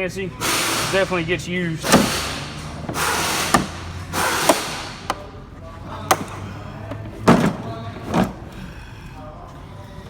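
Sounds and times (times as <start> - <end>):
drawer sliding: 1.8 - 5.2, 6.0 - 8.5
metal toolbox drawers clunking: 1.8 - 5.2, 5.9 - 8.6.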